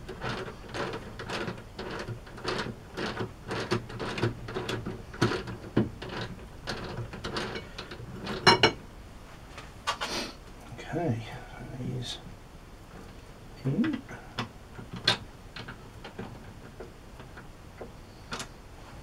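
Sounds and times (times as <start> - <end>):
metallic clicks and clatter: 0.0 - 8.6.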